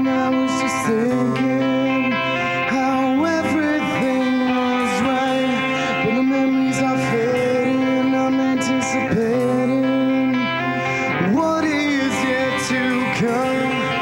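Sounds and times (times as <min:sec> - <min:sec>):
pop-rock band playing: 0:00.0 - 0:14.0.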